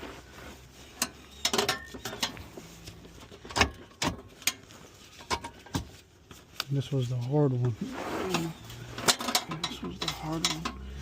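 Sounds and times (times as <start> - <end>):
metal tools clinking and knocking: 0.9 - 2.4, 8.3 - 11.0.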